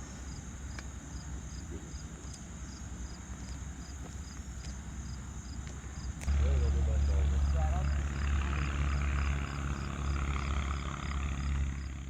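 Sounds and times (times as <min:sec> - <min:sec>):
crickets chirping: 0:00.0 - 0:12.0
high insect drone: 0:00.0 - 0:12.0
low rumble: 0:06.2 - 0:12.0.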